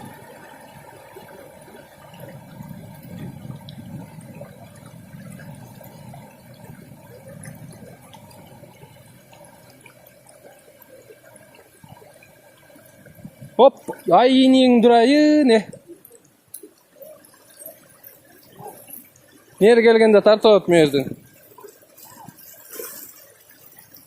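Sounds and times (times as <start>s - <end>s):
running water rushing: 0.0s - 24.0s
small ticks and drips: 0.0s - 24.0s.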